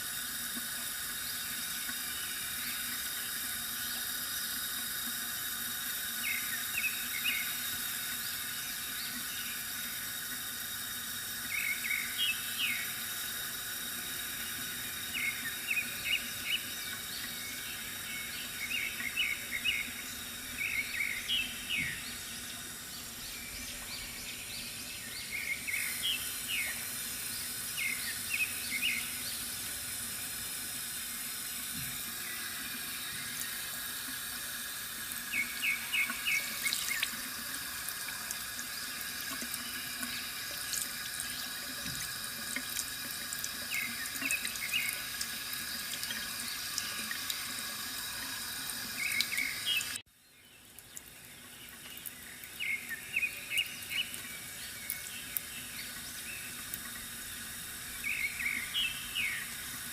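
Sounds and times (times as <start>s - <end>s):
water trickling from fountain: 0.0s - 59.9s
birds chirping: 15.1s - 29.8s, 35.3s - 37.3s, 43.6s - 45.2s, 49.0s - 57.1s, 57.9s - 59.6s.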